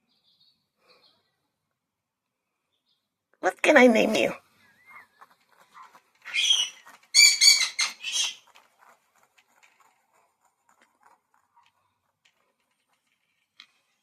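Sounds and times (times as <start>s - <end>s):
bird chirping: 0.0s - 1.5s, 2.6s - 3.2s, 4.2s - 8.5s.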